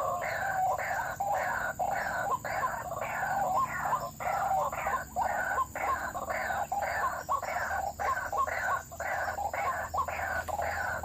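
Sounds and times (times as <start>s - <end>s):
waterhen calling: 0.0s - 11.0s.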